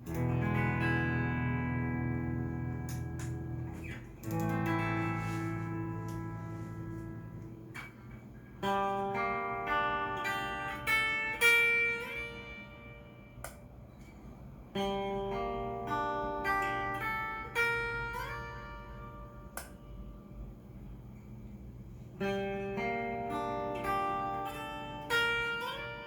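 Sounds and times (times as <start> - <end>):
clean electric guitar playing: 0.0 - 14.1, 14.7 - 20.4, 22.2 - 26.0.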